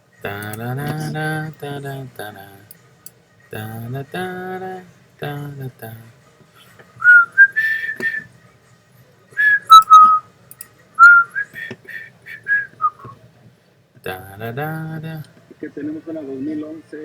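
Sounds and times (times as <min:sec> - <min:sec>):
man whistling a tune: 0:07.0 - 0:08.3, 0:09.4 - 0:10.3, 0:11.0 - 0:13.2
faint clicks: 0:09.7 - 0:10.8.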